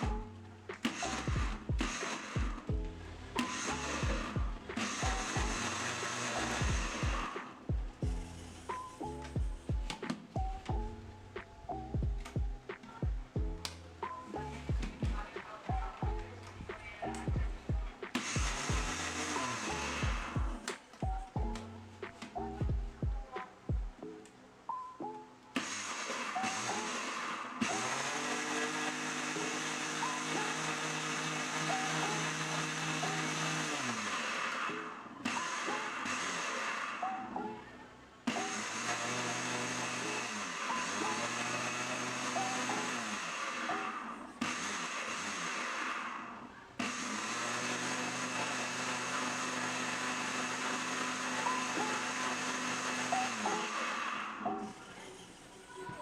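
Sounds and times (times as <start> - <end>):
electric blender running: 0.0 - 23.2, 25.5 - 55.6.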